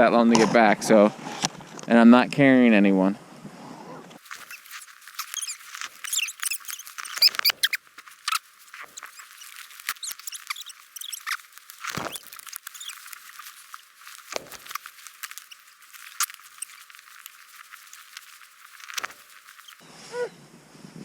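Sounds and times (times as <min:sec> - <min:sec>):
footsteps crunching in snow: 0:04.2 - 0:19.8.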